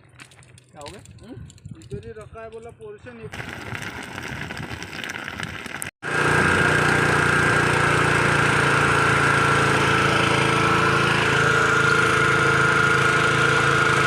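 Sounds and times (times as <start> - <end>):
small engine running: 3.3 - 14.0.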